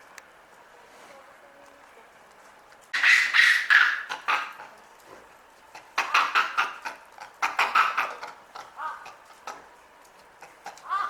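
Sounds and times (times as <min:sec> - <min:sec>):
monkeys screaming: 0:03.0 - 0:04.7, 0:05.8 - 0:09.2, 0:10.7 - 0:11.0.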